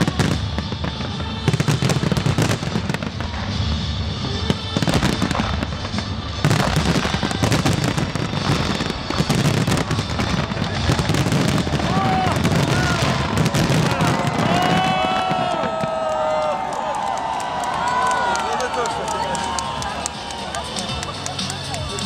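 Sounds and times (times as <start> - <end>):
fireworks crackling and banging: 0.0 - 22.0
crowd cheering: 6.6 - 22.0.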